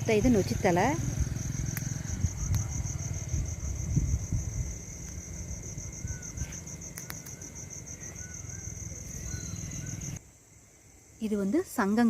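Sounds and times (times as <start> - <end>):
low rumble: 0.0 - 6.4
cricket chirping: 0.0 - 12.0
sharp clicks: 6.9 - 7.5.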